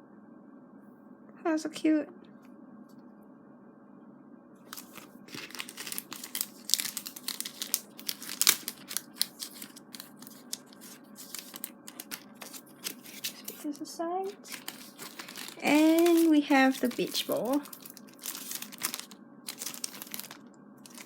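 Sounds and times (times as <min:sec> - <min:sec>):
packaging crinkling: 0:04.7 - 0:21.0.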